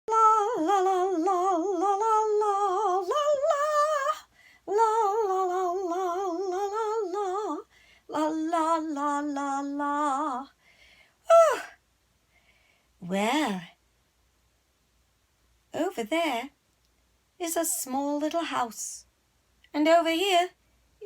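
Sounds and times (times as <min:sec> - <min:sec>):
breaths: 0:04.3 - 0:04.7, 0:07.7 - 0:08.1, 0:10.6 - 0:11.2, 0:12.2 - 0:13.0.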